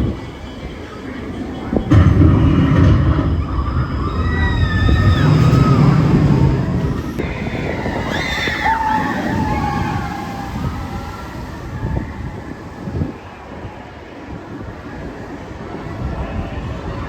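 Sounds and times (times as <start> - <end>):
roller coaster train running past: 0.0 - 17.0
high wavering squeals: 3.0 - 13.2.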